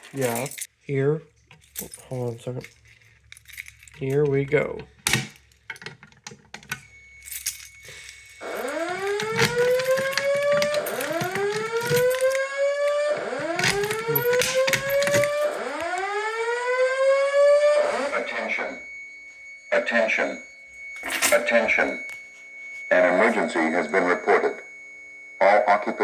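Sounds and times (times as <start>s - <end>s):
fire alarm whoop tone: 6.6s - 26.0s.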